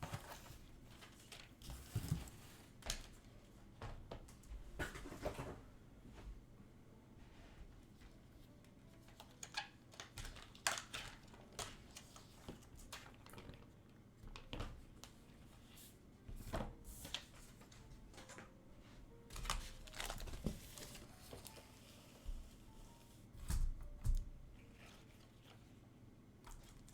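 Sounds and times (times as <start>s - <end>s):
packaging rustling: 19.3s - 21.8s.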